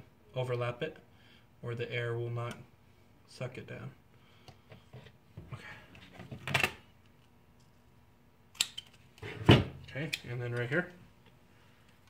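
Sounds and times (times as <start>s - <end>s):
tape and tool handling clicks: 8.5s - 9.2s.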